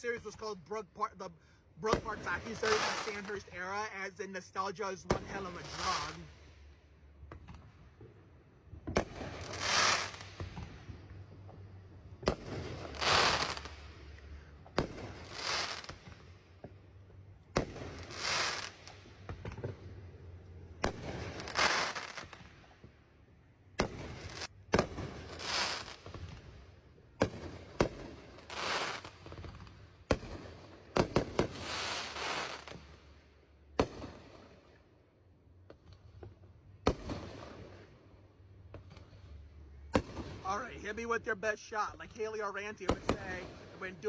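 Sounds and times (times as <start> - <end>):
fireworks bangs: 1.8 - 4.2, 5.0 - 6.3, 8.8 - 11.5, 12.2 - 16.8, 17.5 - 20.0, 20.8 - 22.5, 23.8 - 26.6, 27.2 - 33.0, 36.8 - 38.0, 39.9 - 44.0
fireworks hiss: 2.2 - 3.5, 5.3 - 6.3, 9.2 - 10.5, 12.8 - 13.8, 15.1 - 16.0, 17.9 - 19.0, 21.4 - 22.3, 24.2 - 26.1, 28.4 - 29.4, 31.0 - 32.8.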